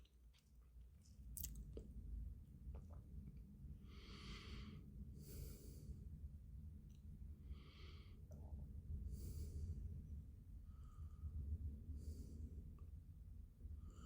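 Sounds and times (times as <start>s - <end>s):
low steady hum: 0.0s - 14.0s
soft breathing: 3.8s - 6.3s, 7.4s - 14.0s.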